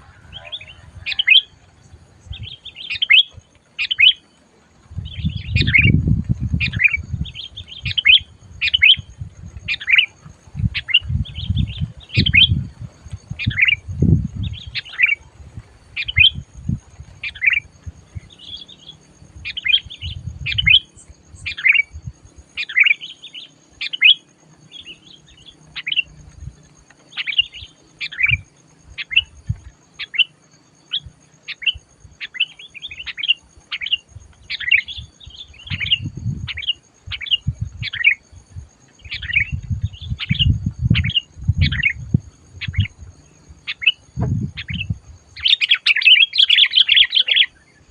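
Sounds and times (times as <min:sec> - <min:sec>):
bird chattering calls: 0:43.7 - 0:47.6
low thumps and rumble: 0:44.2 - 0:45.2.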